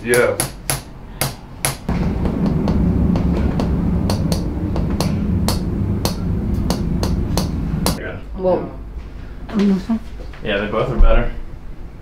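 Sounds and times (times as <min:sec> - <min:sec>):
low steady rumble: 0:01.8 - 0:10.2.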